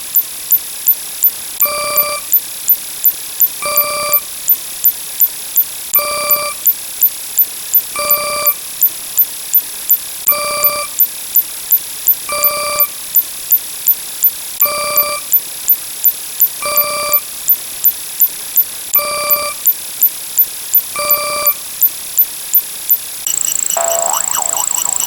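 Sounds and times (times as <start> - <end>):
sharp electronic ticks: 0.1 - 10.0, 10.6 - 14.4, 19.3 - 25.0
pitched electronic beep: 23.3 - 25.0
steady high tone: 23.3 - 25.0
wavering electronic sweep: 23.3 - 25.0.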